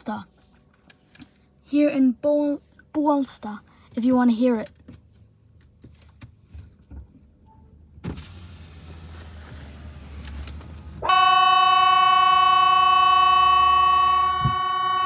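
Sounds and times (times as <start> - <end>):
warning siren steady tone: 11.0 - 15.0.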